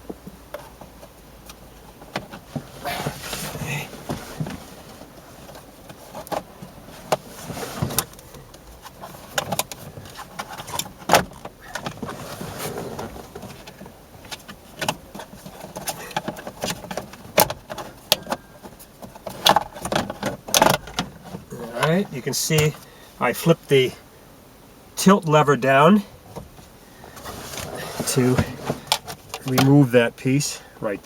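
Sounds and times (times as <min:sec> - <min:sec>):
hand tools clicking and rattling: 0:13.4 - 0:22.0.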